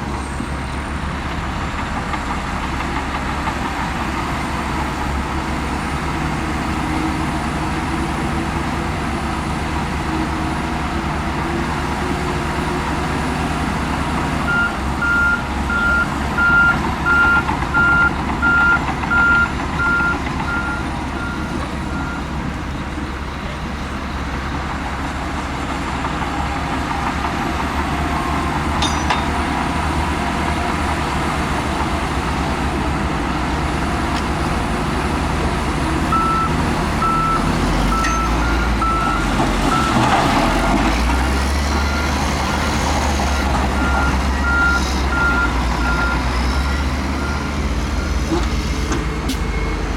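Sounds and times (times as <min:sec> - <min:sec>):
diesel machinery running: 0:00.0 - 0:49.9
reversing alarm beeps: 0:14.5 - 0:22.3, 0:36.1 - 0:40.0, 0:41.7 - 0:49.9.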